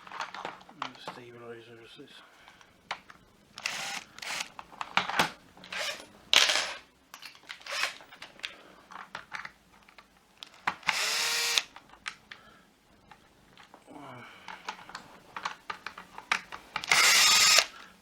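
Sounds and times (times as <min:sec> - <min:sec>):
electric screwdriver whirring: 0:03.6 - 0:04.5, 0:05.7 - 0:06.0, 0:07.6 - 0:08.0, 0:10.8 - 0:11.7, 0:16.8 - 0:17.7.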